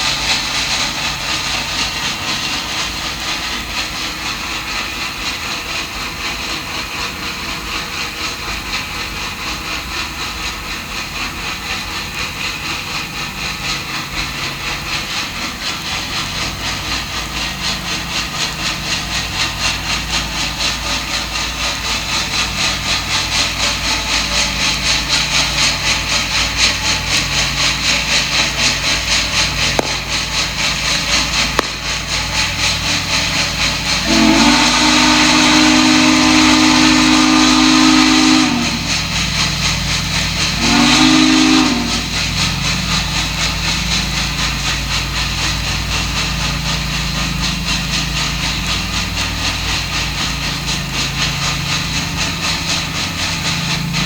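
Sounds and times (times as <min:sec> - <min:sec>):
steam locomotive chuffing: 0:00.0 - 0:54.0
steam whistle blasts: 0:33.7 - 0:39.5, 0:40.3 - 0:42.5.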